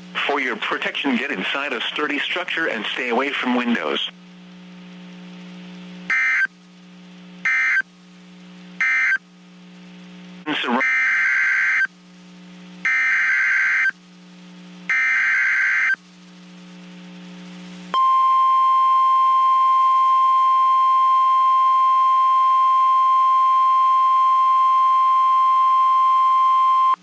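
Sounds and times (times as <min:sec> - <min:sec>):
steady warning alarm tone: 0:06.1 - 0:06.5, 0:07.4 - 0:07.9, 0:08.8 - 0:09.2, 0:10.7 - 0:11.9, 0:12.8 - 0:14.0, 0:14.9 - 0:16.0
screechy digital data bursts: 0:10.5 - 0:11.9, 0:12.9 - 0:14.0, 0:14.9 - 0:16.0.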